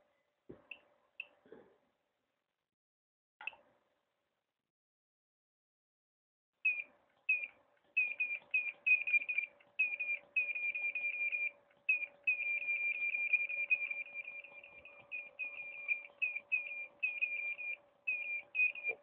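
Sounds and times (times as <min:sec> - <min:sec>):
faint steady hum: 0:06.6 - 0:19.0
studio flash firing chirps: 0:06.7 - 0:19.0.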